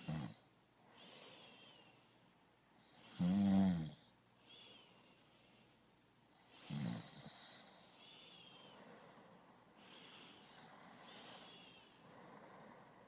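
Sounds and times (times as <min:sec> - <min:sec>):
faint breathing: 0:00.0 - 0:03.4, 0:04.4 - 0:13.0
person snoring: 0:03.0 - 0:04.0, 0:06.6 - 0:08.7.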